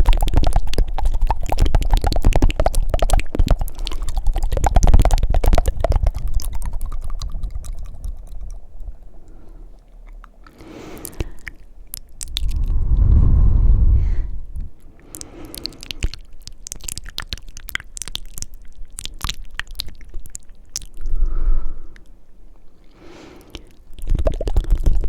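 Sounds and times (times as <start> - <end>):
wet mouth clicks: 0.0 - 13.4, 14.0 - 25.0
short breath: 9.1 - 11.6, 12.8 - 16.0, 21.0 - 22.2, 22.8 - 23.8.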